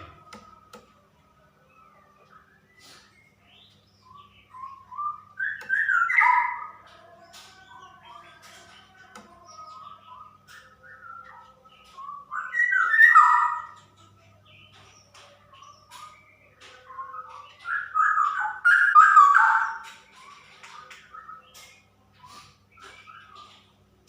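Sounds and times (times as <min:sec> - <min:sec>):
bird singing warbling whistles: 0:04.0 - 0:06.7, 0:12.0 - 0:13.8.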